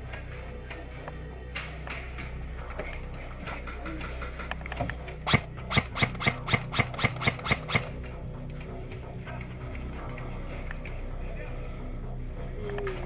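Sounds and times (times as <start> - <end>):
airsoft rifle shots: 5.2 - 7.9.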